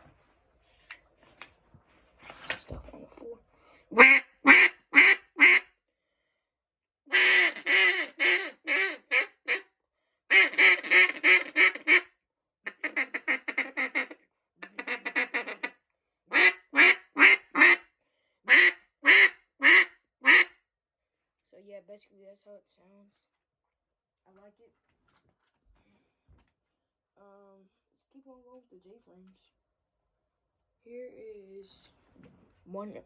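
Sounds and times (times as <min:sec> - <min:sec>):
duck call quacking: 0:03.9 - 0:05.7, 0:07.1 - 0:09.7, 0:10.3 - 0:12.1, 0:12.7 - 0:17.8, 0:18.5 - 0:20.6.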